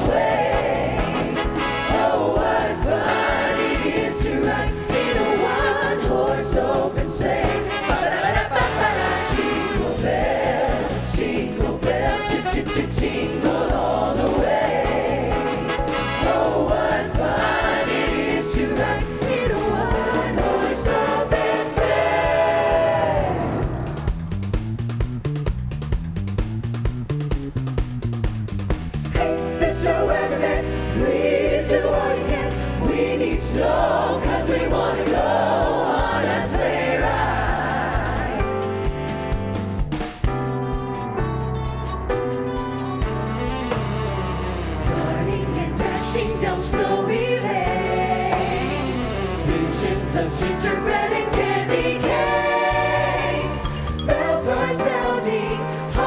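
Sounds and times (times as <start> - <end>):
choir singing: 0.0 - 24.1, 29.2 - 38.6, 44.8 - 56.0
band accompaniment: 0.0 - 56.0
percussion: 0.0 - 56.0.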